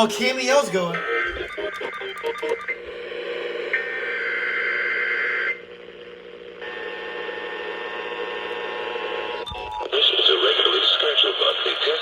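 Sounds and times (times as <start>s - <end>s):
screechy digital data tones: 0.0s - 2.8s, 9.4s - 9.9s
two-tone attention signal: 0.9s - 2.8s, 9.4s - 9.9s
radio hiss: 7.2s - 12.0s.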